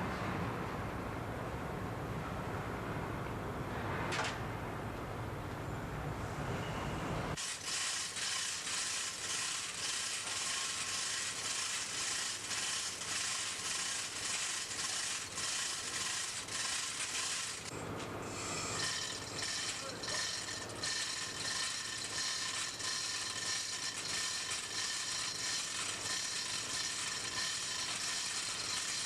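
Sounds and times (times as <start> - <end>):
ratchet clicking: 7.4 - 17.7, 18.8 - 29.0.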